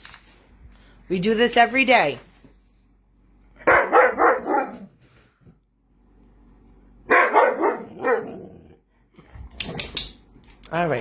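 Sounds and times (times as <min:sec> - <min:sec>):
dog barking and grumbling: 0:03.6 - 0:05.0, 0:07.1 - 0:08.8.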